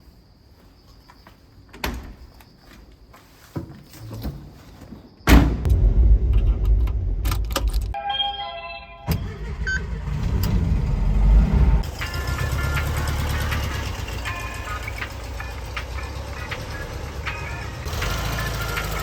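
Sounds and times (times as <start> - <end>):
engine starting and running: 5.7 - 8.0, 9.0 - 19.0
steady multi-tone sound: 5.7 - 11.2.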